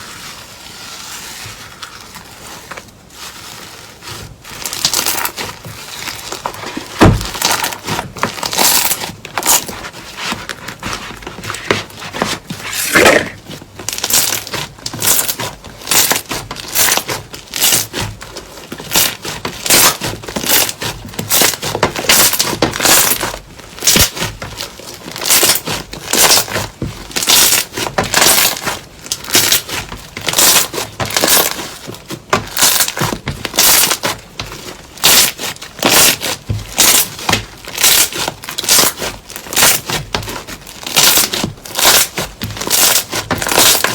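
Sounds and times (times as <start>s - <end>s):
slime crackling and popping: 3.8s - 9.8s, 12.6s - 43.9s.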